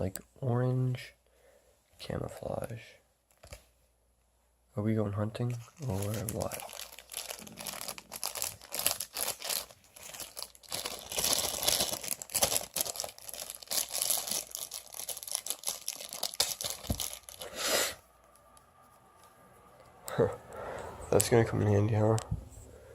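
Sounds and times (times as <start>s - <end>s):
packaging torn and crinkled: 5.8s - 17.5s.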